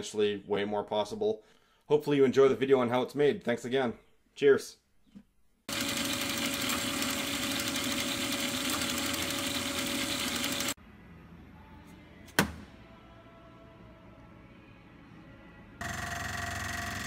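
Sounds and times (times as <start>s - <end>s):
machine running loudly: 5.7s - 10.8s, 15.8s - 17.0s.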